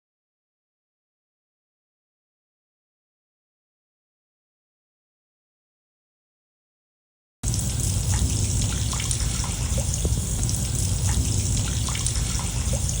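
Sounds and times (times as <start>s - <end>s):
water trickling and bubbling: 7.4s - 13.0s.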